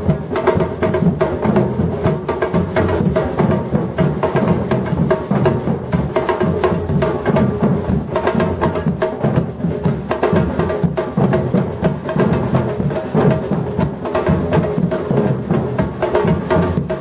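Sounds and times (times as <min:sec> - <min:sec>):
higher drums sharp strikes: 0:00.0 - 0:17.0
woody clicking percussion: 0:00.0 - 0:17.0.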